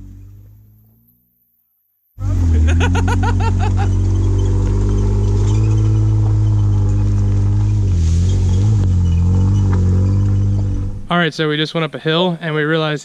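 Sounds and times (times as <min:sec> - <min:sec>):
car engine running at low revs: 0:00.0 - 0:01.4, 0:02.2 - 0:11.1.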